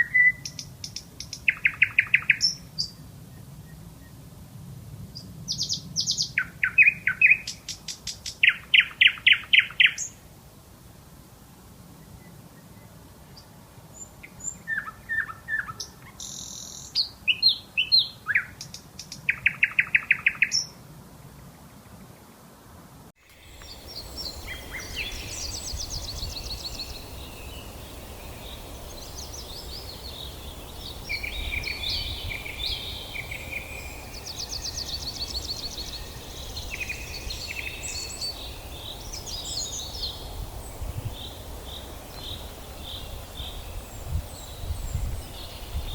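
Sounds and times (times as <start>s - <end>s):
songbirds chirping: 0.0s - 4.4s, 5.0s - 10.3s, 11.8s - 22.4s, 23.2s - 45.9s
bird trill: 23.2s - 40.3s.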